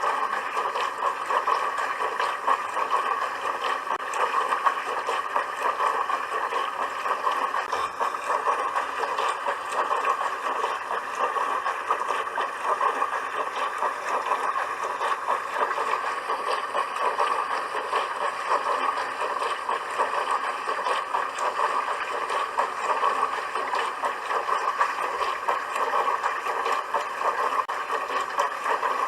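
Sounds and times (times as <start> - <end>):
dishwasher water churning and spraying: 0.0 - 29.0.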